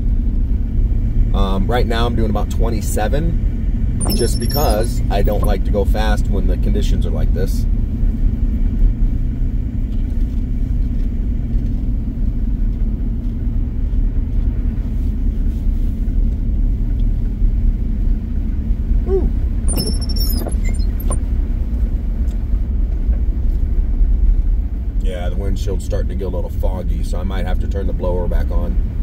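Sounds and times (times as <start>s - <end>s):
low rumble inside truck cab: 0.0s - 29.0s
high squeaking chirp: 4.0s - 5.6s, 19.7s - 21.2s.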